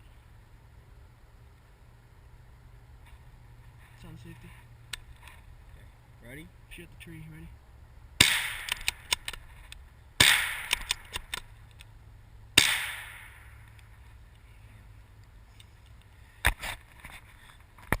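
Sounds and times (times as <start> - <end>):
silenced rifle shots: 8.2 - 9.4, 10.2 - 11.5, 12.6 - 13.7.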